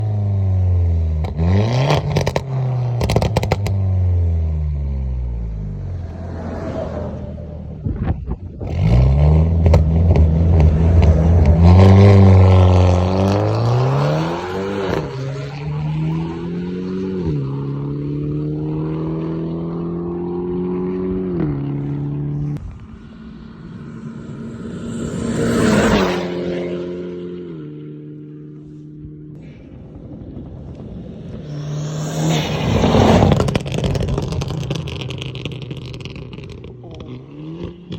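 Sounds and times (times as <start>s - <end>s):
turbocharged car engine revving: 0.0s - 28.8s, 31.3s - 37.9s
exhaust pops and crackles: 1.2s - 3.9s, 7.8s - 8.8s, 32.7s - 37.9s.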